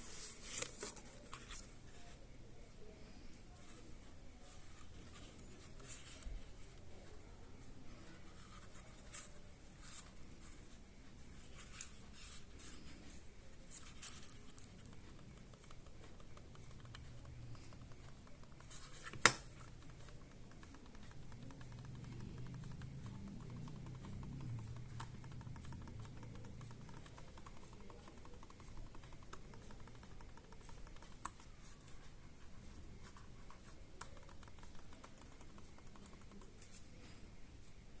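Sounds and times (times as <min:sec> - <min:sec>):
soft mouse clicks: 0:12.6 - 0:37.2
scroll wheel ticks: 0:13.5 - 0:18.8, 0:19.5 - 0:36.7.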